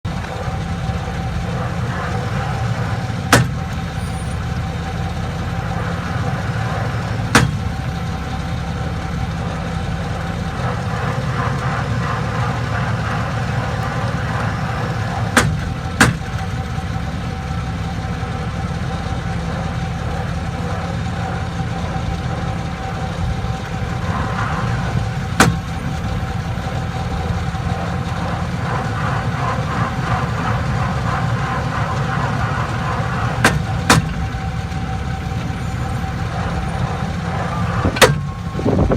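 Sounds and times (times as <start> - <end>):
drivetrain drone: 0.0 - 38.9.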